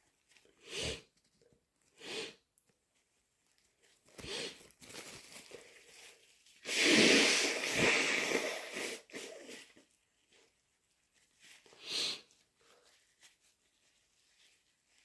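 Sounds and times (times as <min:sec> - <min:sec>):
person blowing nose: 0:00.6 - 0:01.1, 0:02.0 - 0:02.4, 0:04.2 - 0:04.6, 0:06.6 - 0:10.0, 0:11.6 - 0:12.9
person sniffling: 0:06.6 - 0:09.8, 0:11.7 - 0:12.3.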